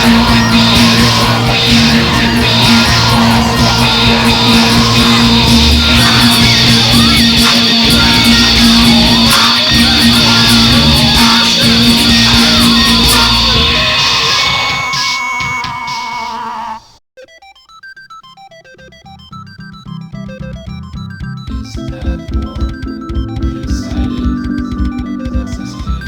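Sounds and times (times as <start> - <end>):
held tones: 0.0 - 16.8, 21.5 - 26.0
loud band music with guitar: 0.0 - 16.8.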